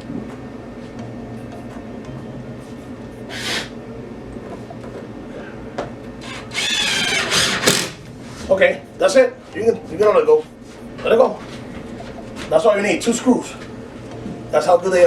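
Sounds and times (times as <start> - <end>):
power drill driving screws: 6.2 - 8.0.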